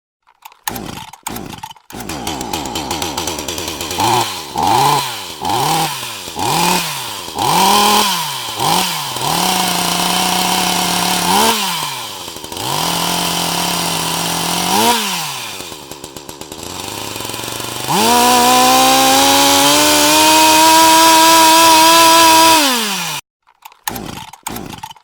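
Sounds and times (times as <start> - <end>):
chainsaw engine revving: 0.6 - 23.2, 23.8 - 25.0.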